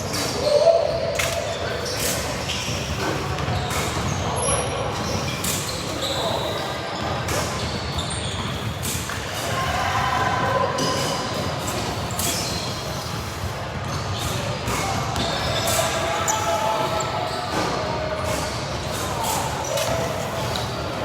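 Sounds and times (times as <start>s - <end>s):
constant crowd din: 0.0s - 21.0s
basketball bouncing on court: 2.7s - 4.3s, 13.7s - 15.7s.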